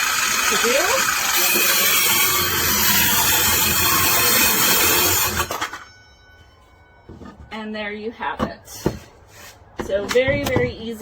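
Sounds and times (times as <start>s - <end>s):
circular saw cutting wood: 0.0s - 5.9s.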